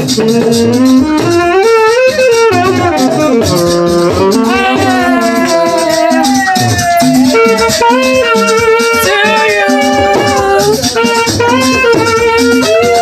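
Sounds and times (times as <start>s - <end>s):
drums: 0.0s - 13.0s
saxophone melody: 0.0s - 13.0s
person singing: 4.4s - 13.0s.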